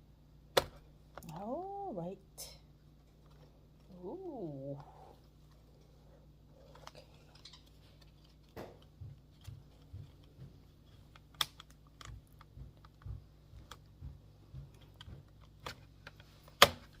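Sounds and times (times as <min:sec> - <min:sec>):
sharp plastic snap: 0:11.2 - 0:12.2, 0:16.6 - 0:16.9.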